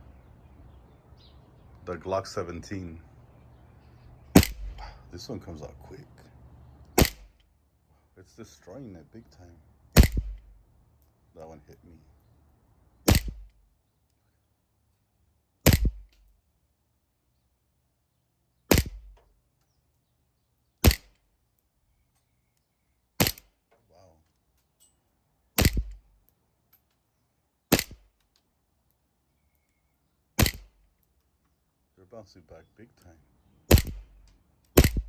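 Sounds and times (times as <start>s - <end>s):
airsoft pistol shots: 4.3s - 4.9s, 7.0s - 7.4s, 10.0s - 10.5s, 13.1s - 13.5s, 15.6s - 16.2s, 18.7s - 19.2s, 20.8s - 21.2s, 23.2s - 23.6s, 25.6s - 26.1s, 27.7s - 28.2s, 30.4s - 30.8s, 33.7s - 34.2s, 34.8s - 35.0s.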